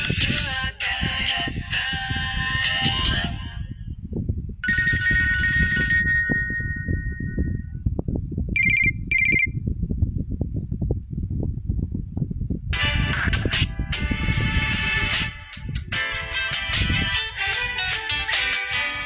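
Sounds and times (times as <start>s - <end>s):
short trilling rings: 4.6s - 7.6s, 8.6s - 9.5s
held chime: 4.6s - 7.7s, 8.6s - 9.5s
phone ringtone tune: 4.6s - 7.7s, 8.6s - 9.5s.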